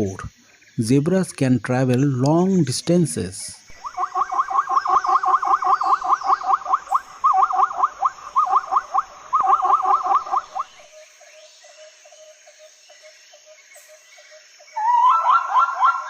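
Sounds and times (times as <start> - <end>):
zebra yelping calls: 3.7 - 10.8.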